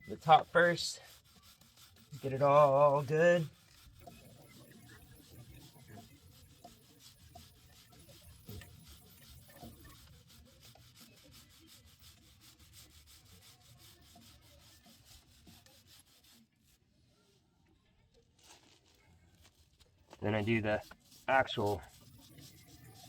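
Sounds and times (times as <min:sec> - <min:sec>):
brush scrubbing a chain: 0:00.0 - 0:16.8, 0:18.4 - 0:23.0.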